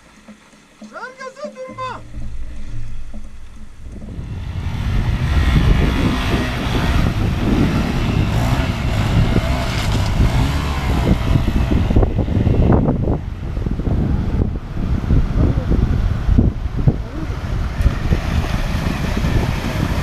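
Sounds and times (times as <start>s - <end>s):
wind buffeting microphone: 1.7s - 20.0s
motorcycle engine running: 1.8s - 20.0s.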